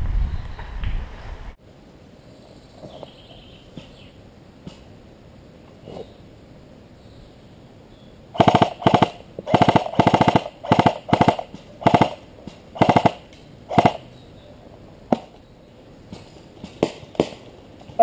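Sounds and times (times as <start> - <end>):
airsoft gun firing bursts: 8.4 - 12.2, 12.8 - 14.0.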